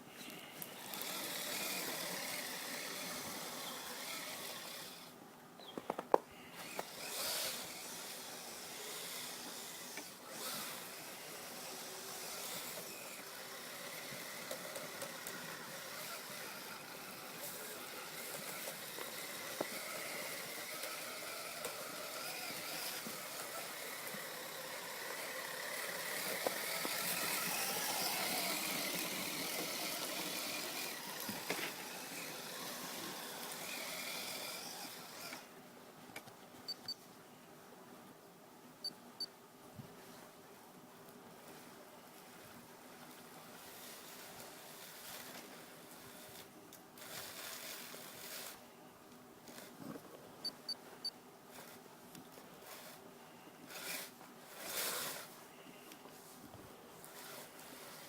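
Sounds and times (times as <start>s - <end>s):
electric motor whining: 0.7s - 5.1s, 6.6s - 35.5s.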